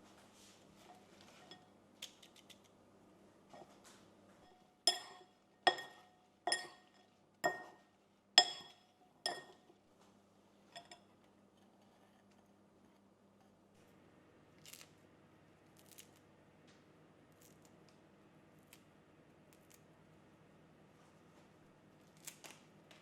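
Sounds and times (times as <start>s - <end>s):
clinks on glass: 4.9s - 7.7s, 8.4s - 9.6s.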